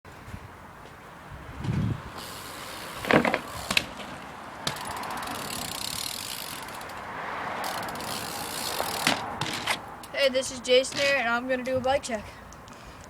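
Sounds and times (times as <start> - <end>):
bike clicks and rattles: 1.6 - 10.2.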